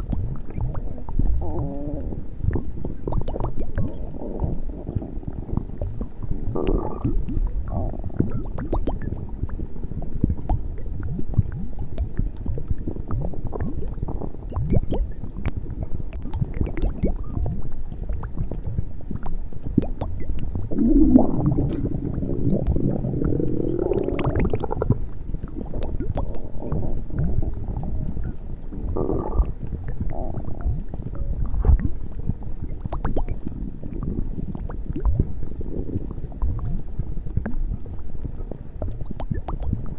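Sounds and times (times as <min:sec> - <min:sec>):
stomach growling and gurgling: 0:00.0 - 0:39.9.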